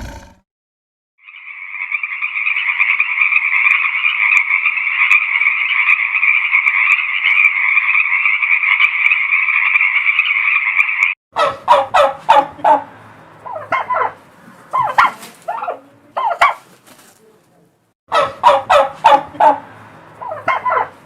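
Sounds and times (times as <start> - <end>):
frogs trilling in chorus: 1.2 - 11.1.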